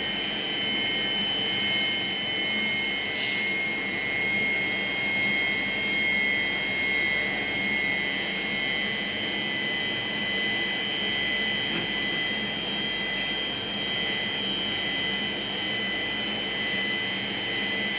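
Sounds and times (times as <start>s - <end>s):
machine running with high whine: 0.0s - 17.9s.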